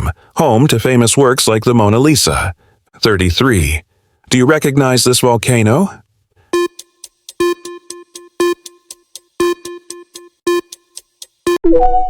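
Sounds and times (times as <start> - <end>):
countdown timer ticking: 6.6 - 11.9.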